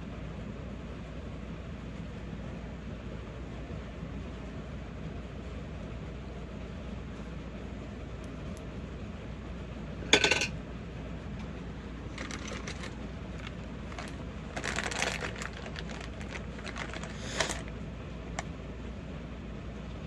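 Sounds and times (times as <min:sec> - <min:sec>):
small hard items clattering: 0:12.1 - 0:17.7
heavy rain hiss: 0:17.1 - 0:17.6.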